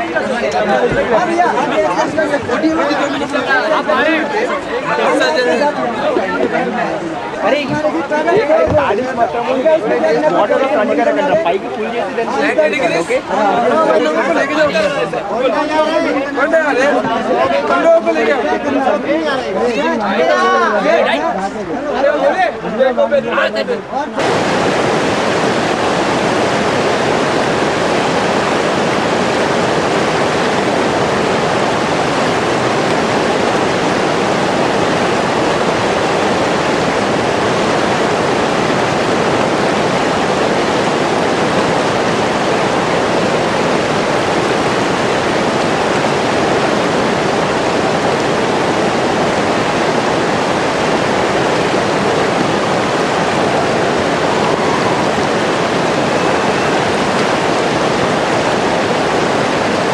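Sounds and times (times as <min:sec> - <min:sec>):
river rapids rushing: 0:00.0 - 0:59.9.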